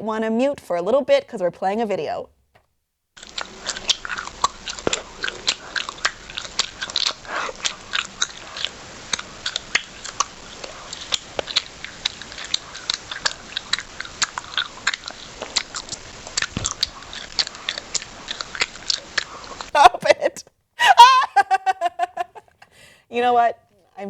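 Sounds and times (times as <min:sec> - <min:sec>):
person chewing food loudly: 0:03.2 - 0:19.8.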